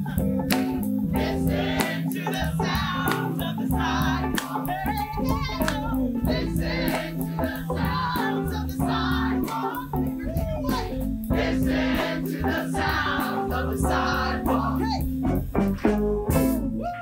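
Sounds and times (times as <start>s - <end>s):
choir singing: 0.0s - 15.0s
steady drum beat: 0.0s - 16.8s
bass line: 0.0s - 17.0s.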